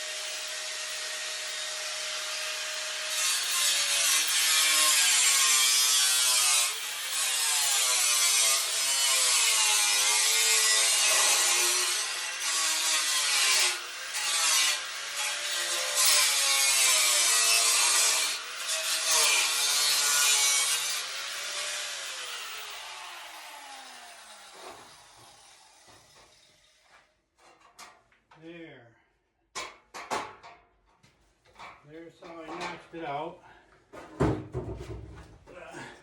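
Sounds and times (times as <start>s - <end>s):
angle grinder cutting steel: 0.0s - 26.8s.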